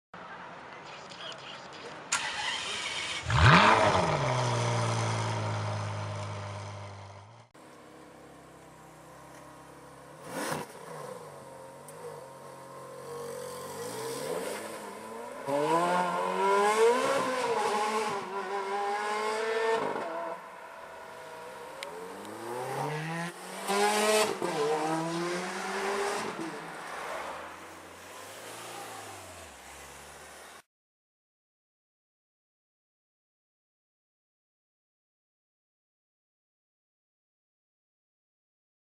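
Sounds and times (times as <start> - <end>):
sports car engine accelerating: 3.2 - 20.4.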